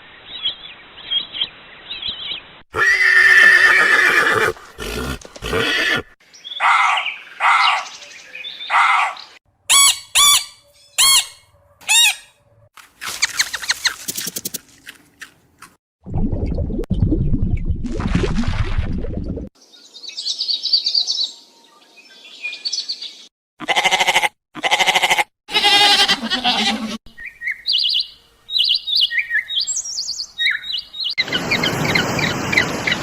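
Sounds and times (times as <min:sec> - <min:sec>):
goats bleating: 0:23.6 - 0:27.0.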